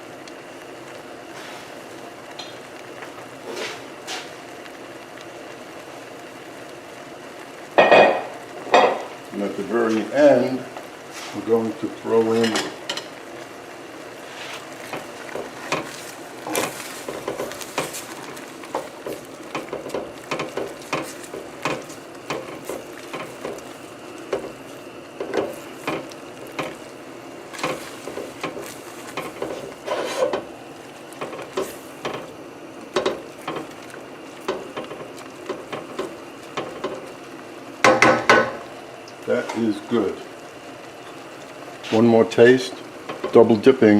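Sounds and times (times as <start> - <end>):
sauce sizzling: 0.0 - 43.9
utensil scraping a pan: 14.2 - 23.7, 27.5 - 30.5
utensil knocking against pan: 37.8 - 38.6.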